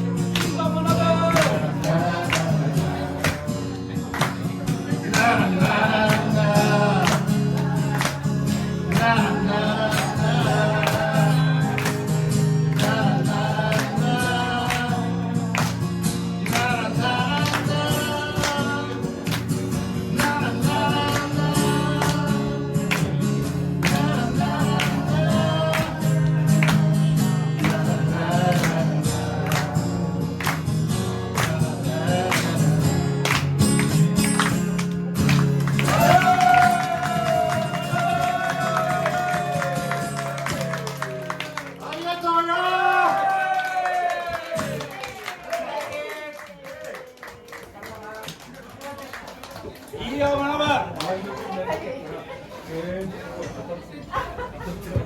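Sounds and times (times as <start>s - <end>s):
man singing: 0.0s - 19.4s, 20.0s - 33.8s, 35.8s - 44.8s
guitar strumming: 0.0s - 41.7s.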